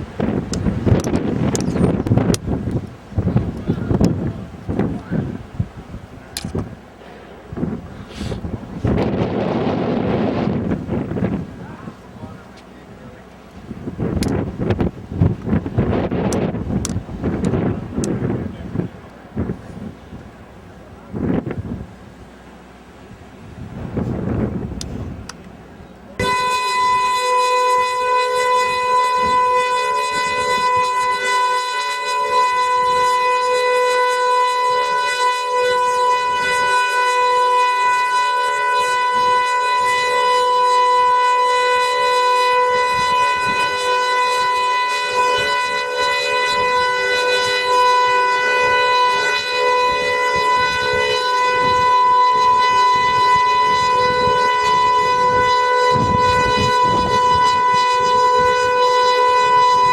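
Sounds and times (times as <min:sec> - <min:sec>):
warning siren steady tone: 0:00.1 - 0:05.4, 0:26.2 - 0:59.9.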